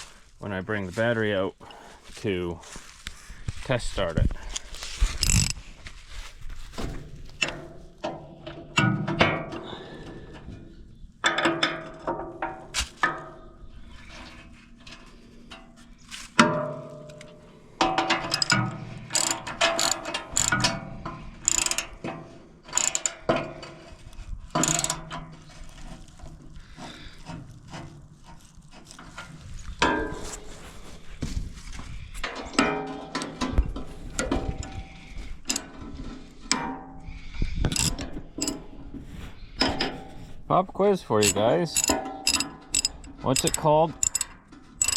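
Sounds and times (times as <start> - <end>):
ratchet wrench clicking: 5.2 - 5.6, 18.2 - 20.8, 21.4 - 22.0, 22.7 - 23.3, 24.6 - 25.0, 37.7 - 38.6, 41.2 - 44.9
tools clinking against metal: 16.6 - 20.8, 21.4 - 23.6, 24.6 - 25.1, 37.7 - 38.7, 41.1 - 44.9.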